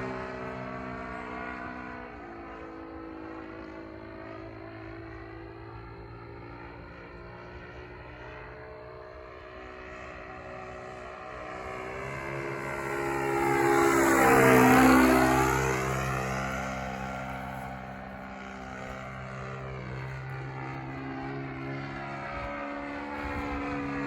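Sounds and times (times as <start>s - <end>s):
model airplane engine droning: 0.0s - 24.0s.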